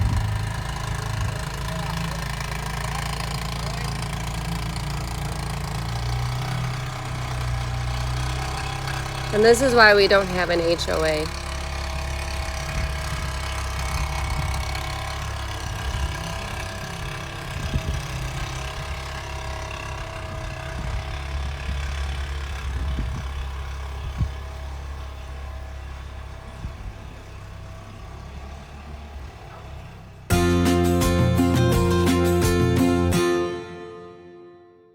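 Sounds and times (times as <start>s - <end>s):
vehicle engine running: 0.0s - 34.0s
music: 30.3s - 34.9s.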